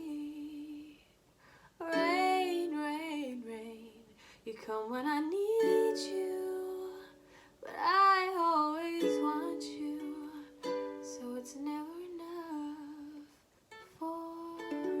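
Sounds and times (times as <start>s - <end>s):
ukulele chords: 1.8s - 3.8s, 5.2s - 15.0s.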